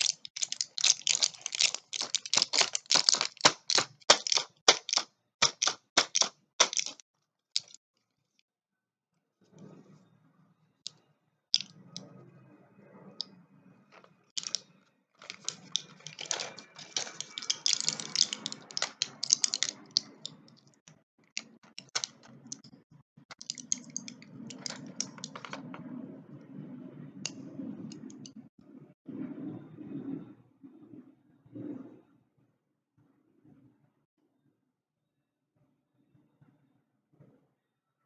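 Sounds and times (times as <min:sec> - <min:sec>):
packaging clicks and taps: 0:00.0 - 0:07.0, 0:07.6 - 0:07.8, 0:14.4 - 0:14.6, 0:15.2 - 0:20.7, 0:21.4 - 0:22.7, 0:23.3 - 0:25.8
packaging crinkling: 0:00.0 - 0:07.0, 0:07.6 - 0:07.8, 0:14.4 - 0:14.6, 0:15.2 - 0:20.3, 0:21.4 - 0:22.6, 0:23.3 - 0:25.7.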